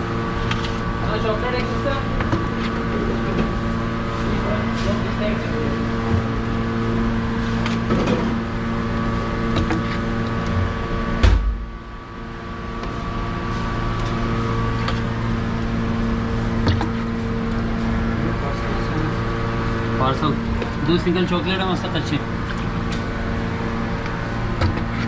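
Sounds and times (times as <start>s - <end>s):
sharp thump: 11.2s - 11.8s.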